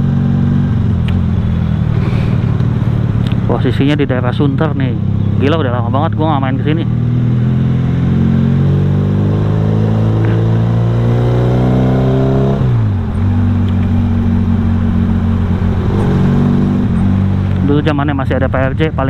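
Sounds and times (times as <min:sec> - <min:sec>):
motorcycle engine running: 0:00.0 - 0:08.3, 0:10.5 - 0:19.0.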